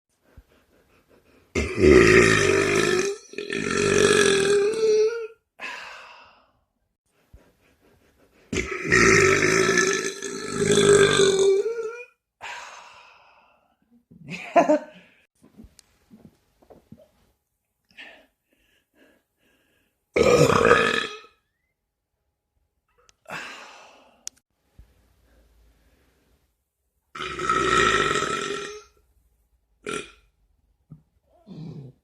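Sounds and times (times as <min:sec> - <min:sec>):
person burping loudly: 0:01.6 - 0:05.1, 0:08.6 - 0:12.0, 0:20.2 - 0:21.4, 0:27.2 - 0:28.9, 0:29.8 - 0:30.2.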